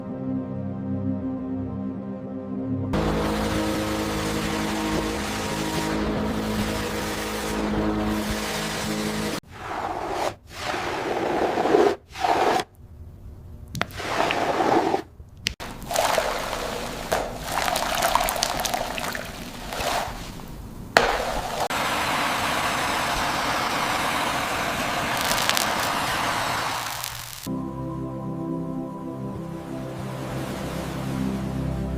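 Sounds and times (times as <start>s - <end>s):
steady hissing noise: 3.0s - 9.7s, 15.6s - 27.5s
short scraping and squishing: 4.9s - 12.7s, 13.7s - 21.7s.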